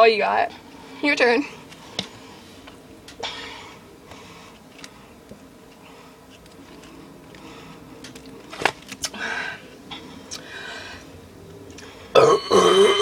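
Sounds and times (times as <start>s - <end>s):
girl burping loudly: 12.1s - 13.0s.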